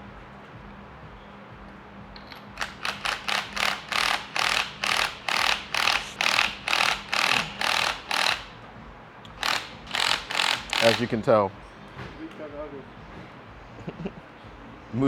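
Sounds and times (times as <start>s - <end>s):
ratchet wrench clicking: 2.2s - 8.5s, 9.2s - 11.2s.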